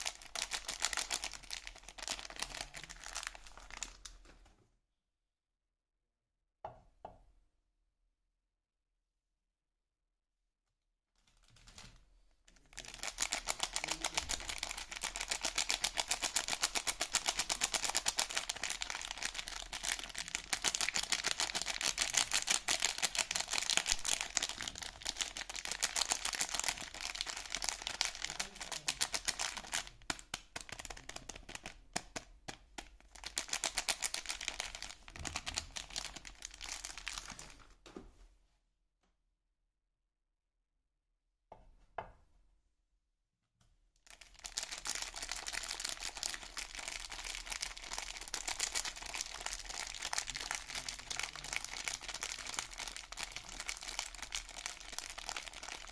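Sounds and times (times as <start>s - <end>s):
packaging crackling: 0.0s - 4.3s, 12.6s - 37.6s, 44.1s - 55.9s.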